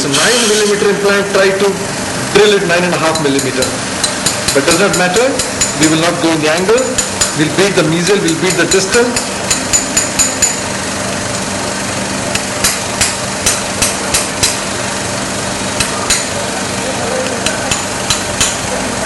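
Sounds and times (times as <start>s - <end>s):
mallet tapping metal instrument: 8.2s - 10.7s.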